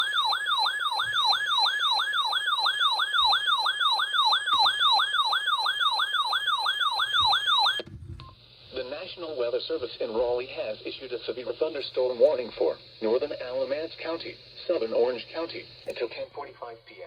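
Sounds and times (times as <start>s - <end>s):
electronic yelp siren alarm: 0.0s - 7.8s.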